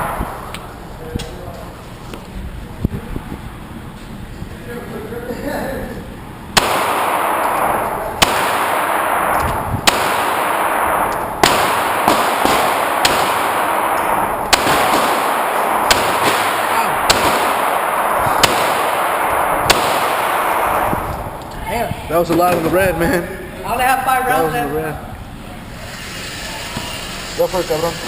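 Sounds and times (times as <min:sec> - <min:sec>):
loud steady rushing noise: 0:00.0 - 0:01.8, 0:06.2 - 0:28.0
pistol shots: 0:06.6 - 0:21.5.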